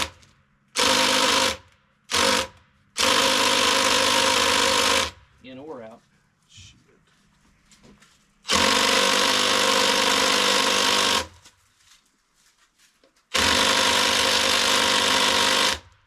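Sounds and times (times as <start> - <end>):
cordless drill boring into wood: 0.8 - 5.2, 8.5 - 11.4, 13.3 - 15.9.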